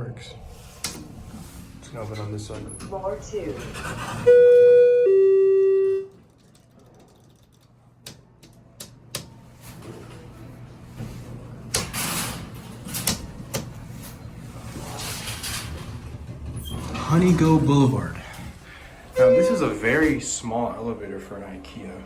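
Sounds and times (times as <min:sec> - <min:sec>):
elevator doors clicking and shuffling: 0:00.3 - 0:22.0
elevator two-tone chime: 0:04.3 - 0:06.1, 0:19.2 - 0:20.1
low steady hum: 0:12.5 - 0:22.0.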